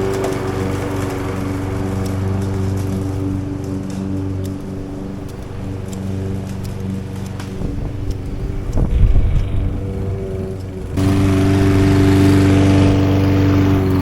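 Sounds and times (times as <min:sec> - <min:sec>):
lawn mower engine running: 0:00.0 - 0:14.0.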